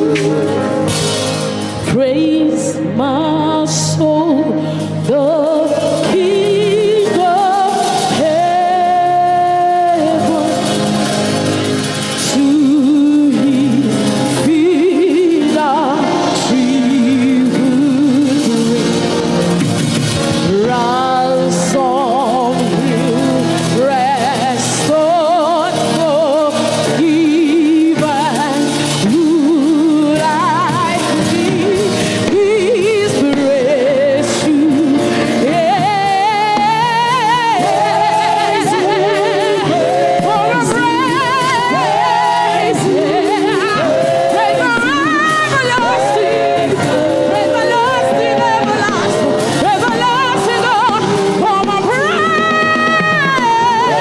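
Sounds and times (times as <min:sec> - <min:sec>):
band accompaniment: 0:00.0 - 0:54.0
solo voice singing gospel: 0:00.0 - 0:54.0.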